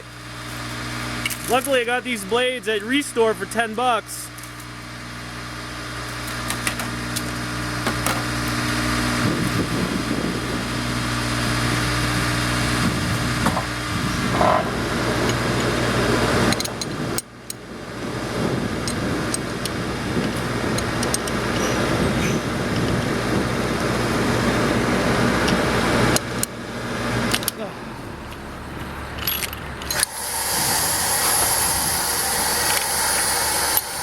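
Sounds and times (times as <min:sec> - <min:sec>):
angle grinder cutting tire: 0:00.0 - 0:34.0
truck engine humming: 0:00.0 - 0:34.0.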